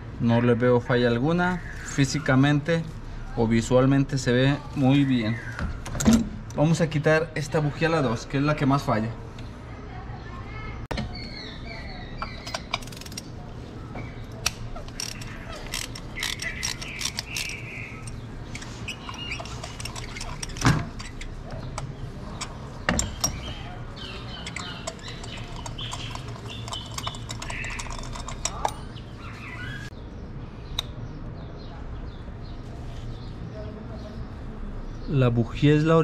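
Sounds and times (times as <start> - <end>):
birds chirping: 0.2 - 6.0, 6.6 - 36.0
ratchet wrench clicking: 12.4 - 13.3, 14.4 - 28.8
tools clinking on metal: 14.4 - 29.0.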